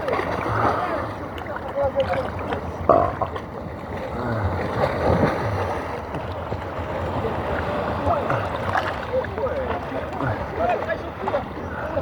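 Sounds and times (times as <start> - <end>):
water splash: 0.0 - 6.4
sea water sloshing and lapping: 0.0 - 12.0.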